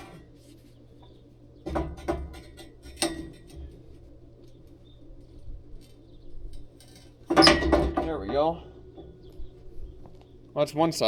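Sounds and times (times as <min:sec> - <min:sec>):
steady low hum: 0:00.0 - 0:11.0
metal knocks and rattles: 0:01.7 - 0:03.8, 0:06.8 - 0:10.1.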